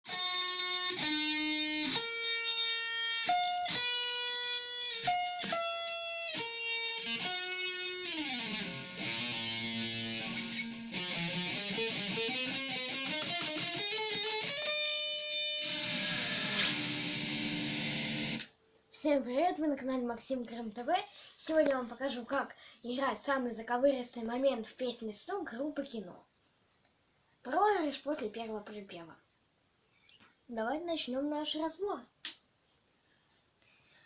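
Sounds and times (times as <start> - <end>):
electric guitar lead line: 0.1 - 18.4.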